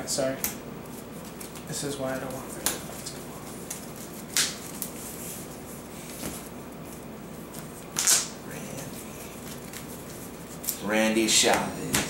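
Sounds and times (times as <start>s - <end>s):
cards shuffling rustle: 0.9s - 10.8s.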